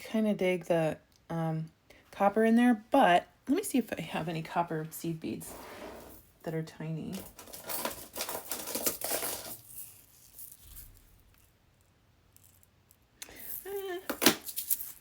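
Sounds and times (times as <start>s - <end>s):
beads clicking and rattling: 7.2s - 15.0s.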